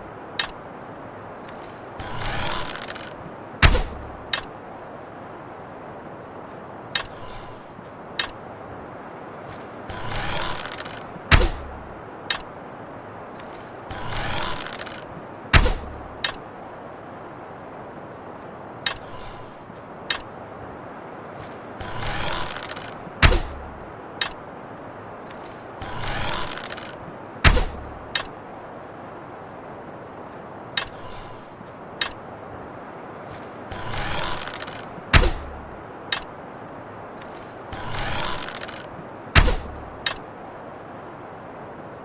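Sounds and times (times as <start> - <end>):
small clicks: 0.3 - 0.6, 8.2 - 8.4
bowstring rasping draw: 1.5 - 4.1, 30.8 - 32.2, 33.3 - 36.3, 37.2 - 40.2.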